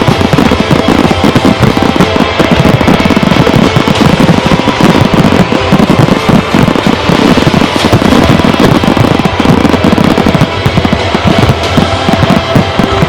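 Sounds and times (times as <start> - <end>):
fireworks booming and crackling: 0.0 - 13.0
music: 0.0 - 13.0.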